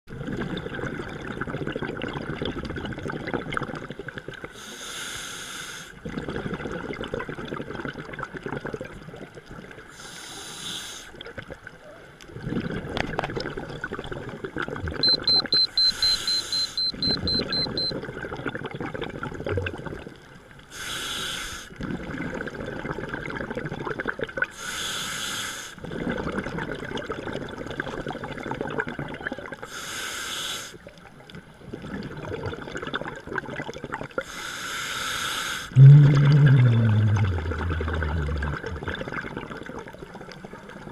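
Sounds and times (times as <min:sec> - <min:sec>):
diver inhaling through regulator: 0:04.6 - 0:06.0, 0:09.9 - 0:11.1, 0:20.7 - 0:21.7, 0:24.6 - 0:25.8, 0:34.2 - 0:38.8
high electronic beeps: 0:15.0 - 0:17.9
exhaust bubbles rushing: 0:35.8 - 0:40.0.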